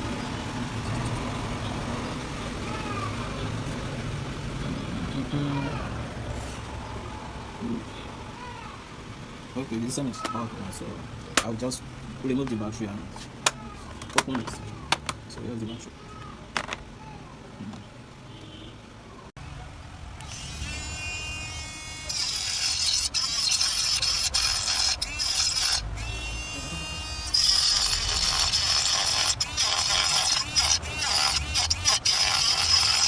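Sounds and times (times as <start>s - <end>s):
rotary tool grinding plastic: 20.2s - 33.0s
rotary tool spinning up: 20.2s - 33.0s.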